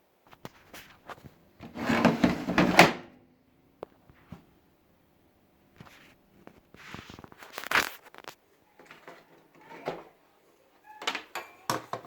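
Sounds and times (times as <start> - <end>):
handling rustling and scraping: 0.3 - 3.0, 5.8 - 10.0.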